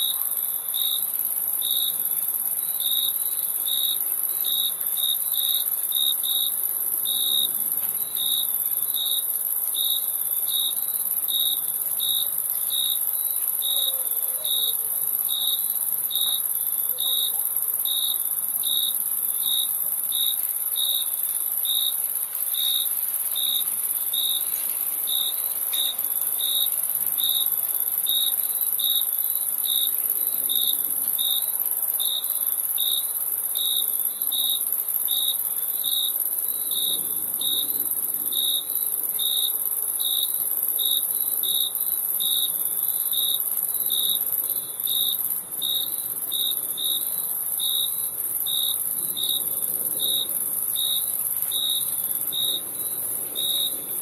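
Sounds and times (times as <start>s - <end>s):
cricket chirping: 0.0s - 54.0s
high-pitched insect trill: 0.0s - 54.0s.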